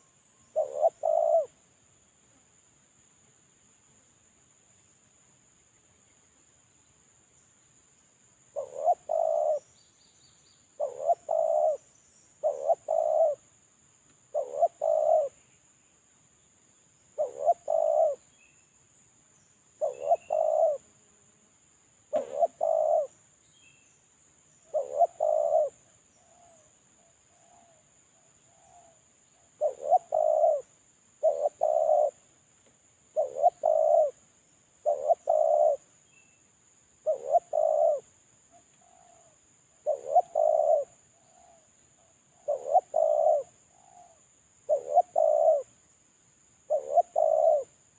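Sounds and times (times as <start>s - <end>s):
dove cooing: 0.0s - 1.6s, 8.5s - 9.7s, 10.8s - 13.4s, 14.3s - 15.4s, 17.2s - 18.2s, 19.8s - 20.8s, 22.1s - 23.1s, 24.7s - 26.7s, 28.5s - 32.2s, 33.1s - 34.2s, 34.8s - 35.8s, 37.0s - 38.1s, 38.8s - 41.6s, 42.3s - 45.7s, 46.7s - 47.7s.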